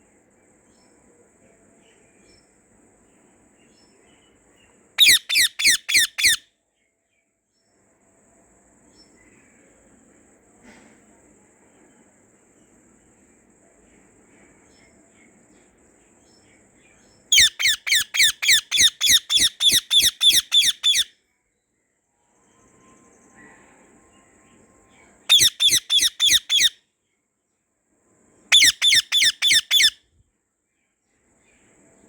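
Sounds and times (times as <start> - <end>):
faint bird chirps: 0.6 - 27.3, 28.5 - 32.0
parrot harsh calls: 5.0 - 6.4, 17.3 - 21.1, 25.3 - 26.8, 28.5 - 30.0.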